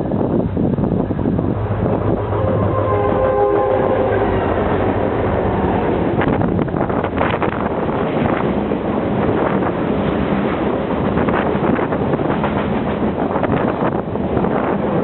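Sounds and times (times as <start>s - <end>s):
diesel engines rumbling: 0.0s - 10.0s
locomotive horn chord: 1.6s - 6.1s.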